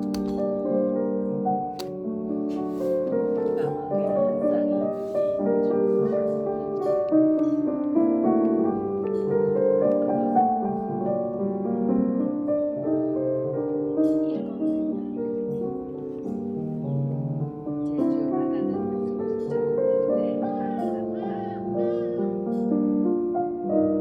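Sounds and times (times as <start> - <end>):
gentle piano melody: 0.0 - 24.0.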